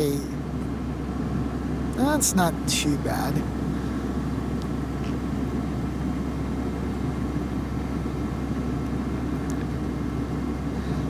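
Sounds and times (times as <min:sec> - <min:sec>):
low engine hum: 0:00.0 - 0:11.0.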